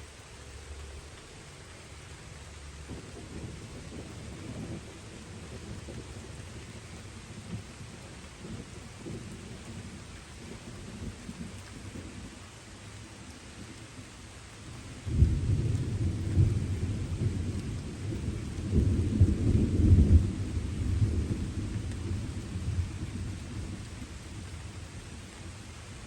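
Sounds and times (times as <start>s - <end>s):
light rain hiss: 0.0s - 26.0s
distant thunder rumbling: 2.8s - 12.4s, 14.7s - 26.0s.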